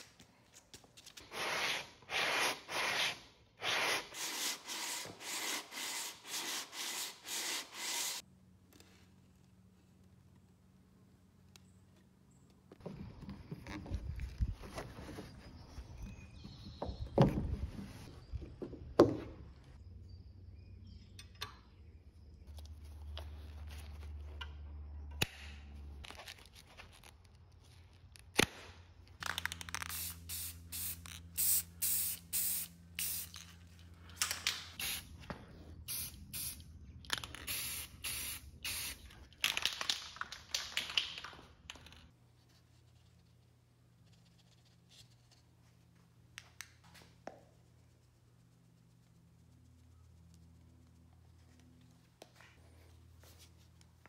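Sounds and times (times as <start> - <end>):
spray hissing bursts: 29.9 - 33.4, 37.5 - 39.0.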